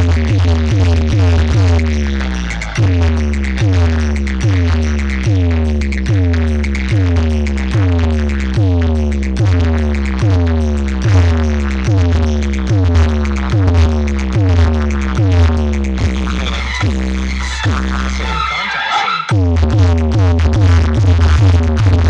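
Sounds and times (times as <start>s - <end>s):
electronic music with pulsing beat: 0.0s - 22.0s.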